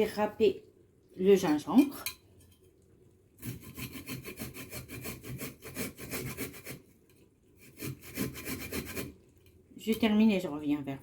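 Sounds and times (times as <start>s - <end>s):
ginger grated on hand grater: 3.4s - 6.9s, 7.6s - 9.2s.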